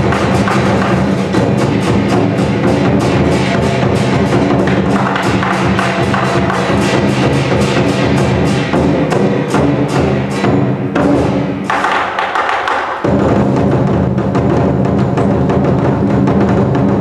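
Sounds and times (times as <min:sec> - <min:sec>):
cymbals clashing: 0:00.0 - 0:16.6
deep drum beating: 0:00.0 - 0:17.0.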